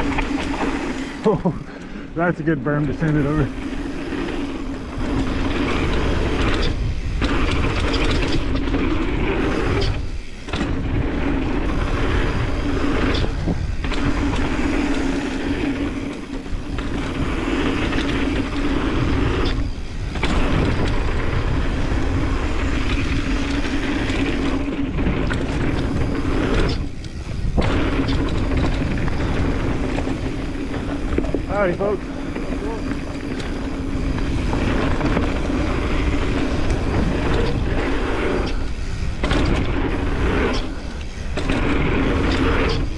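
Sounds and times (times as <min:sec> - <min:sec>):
bike tyres rolling on dirt: 0:00.0 - 0:42.9
wind on microphone: 0:03.1 - 0:42.9.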